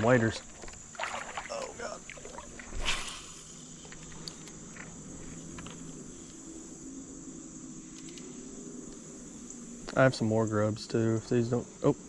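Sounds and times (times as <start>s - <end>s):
steady high hiss: 0.0s - 12.0s
water splash: 0.9s - 3.4s
light ticks: 7.9s - 8.3s.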